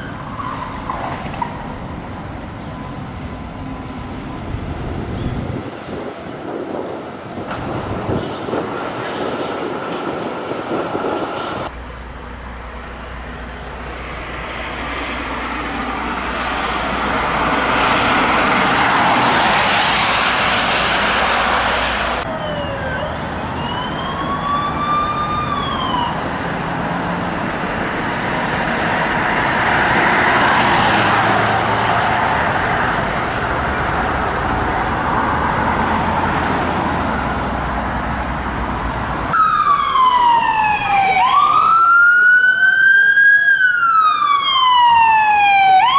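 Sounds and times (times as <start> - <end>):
police siren wail: 0.0 - 4.5, 22.2 - 27.9, 39.3 - 45.9
passing traffic: 0.0 - 45.9.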